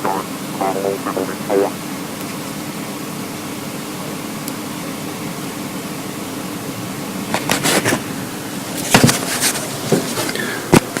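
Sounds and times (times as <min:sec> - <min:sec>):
loud crackling noise bursts: 0:00.0 - 0:01.8
speaker hum and hiss: 0:00.0 - 0:11.0.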